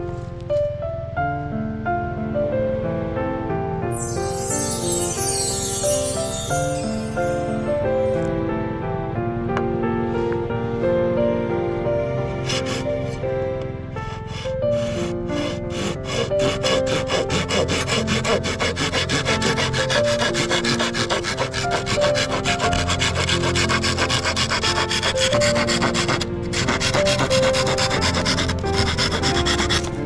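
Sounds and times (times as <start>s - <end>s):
background music with melody: 0.0s - 30.0s
hand saw cutting wood: 12.4s - 13.2s, 14.3s - 30.0s.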